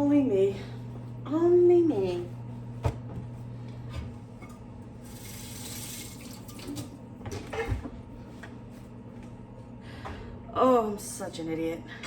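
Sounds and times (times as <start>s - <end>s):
tap water running into sink: 5.1s - 6.9s.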